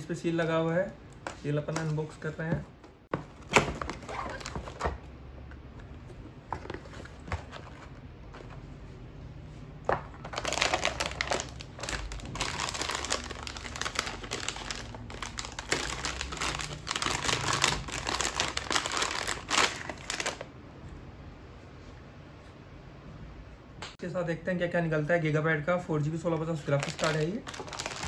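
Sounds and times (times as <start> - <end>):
crinkling and rustling of wrapping: 1.2 - 5.0, 6.4 - 8.7, 10.1 - 20.5, 26.3 - 28.0.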